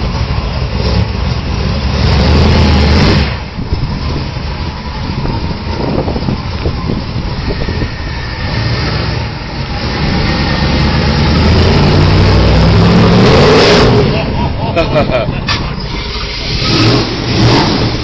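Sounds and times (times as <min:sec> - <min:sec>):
car engine low rumble: 0:00.0 - 0:18.0.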